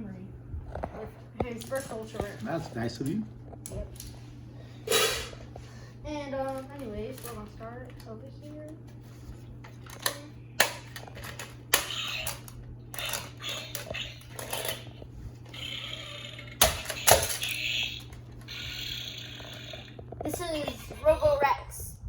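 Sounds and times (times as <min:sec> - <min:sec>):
plastic toy parts clacking: 0:11.0 - 0:14.9, 0:16.6 - 0:19.8.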